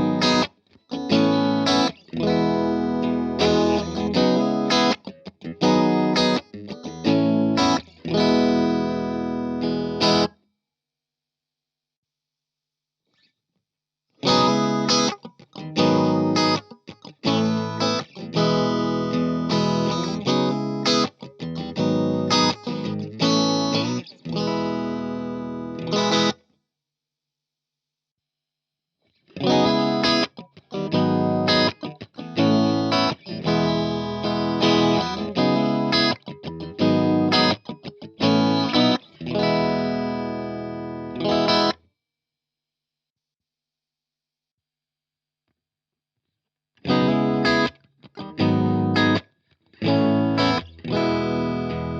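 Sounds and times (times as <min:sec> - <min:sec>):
electric guitar chords: 0:00.0 - 0:10.3, 0:14.2 - 0:26.4, 0:29.4 - 0:41.8, 0:46.8 - 0:51.9.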